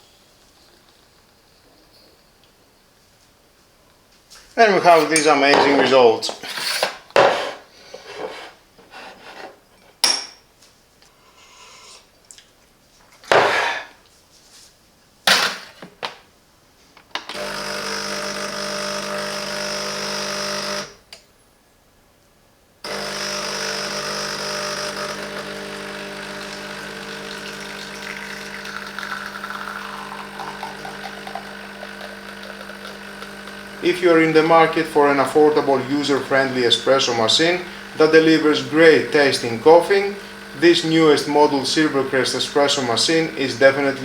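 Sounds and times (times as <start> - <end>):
espresso machine pump humming: 4.6 - 5.3, 17.3 - 21.0, 22.9 - 44.0.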